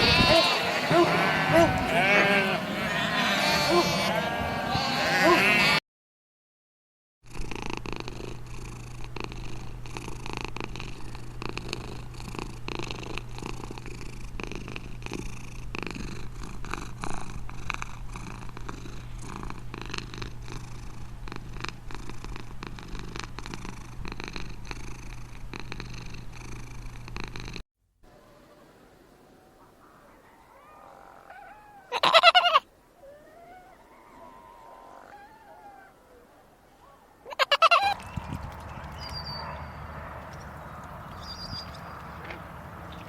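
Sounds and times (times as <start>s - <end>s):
cat purring: 7.3s - 27.6s.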